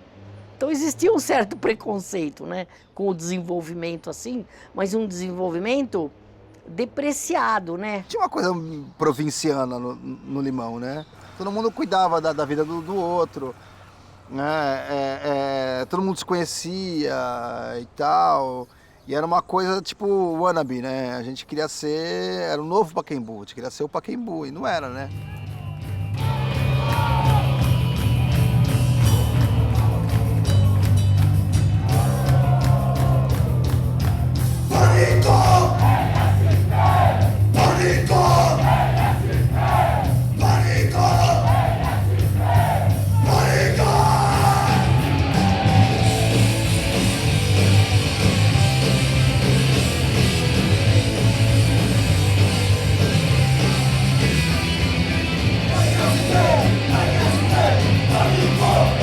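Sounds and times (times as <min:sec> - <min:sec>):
punk rock song: 0:25.1 - 0:59.0
yelled vocals: 0:25.6 - 0:27.8, 0:31.7 - 0:59.0.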